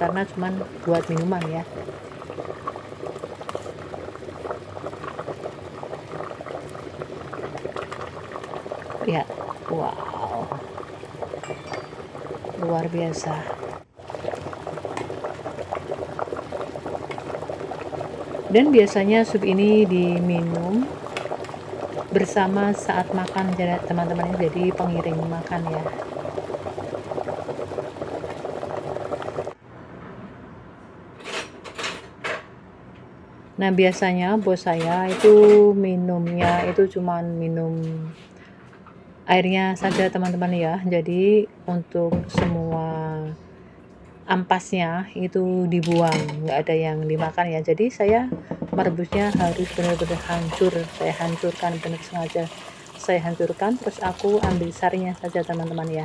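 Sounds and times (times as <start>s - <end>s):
soup bubbling: 0.0s - 29.6s, 49.2s - 56.0s.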